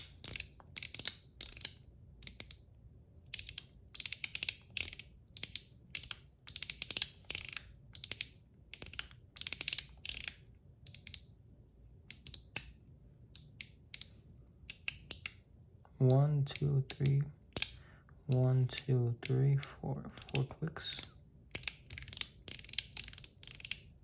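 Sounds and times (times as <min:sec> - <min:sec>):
metal fidget slider clicking: 0:00.0 - 0:02.6, 0:03.3 - 0:11.2, 0:16.5 - 0:23.9.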